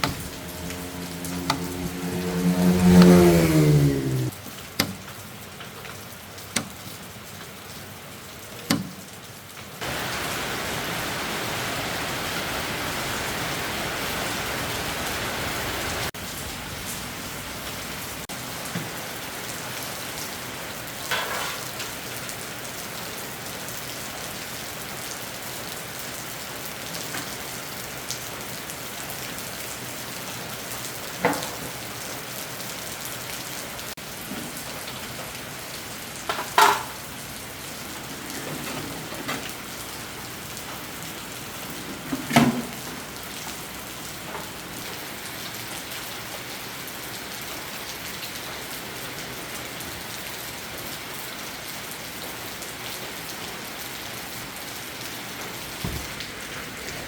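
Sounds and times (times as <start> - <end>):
hum dropping in pitch: 0.0 - 4.3
heavy rain: 0.0 - 57.0.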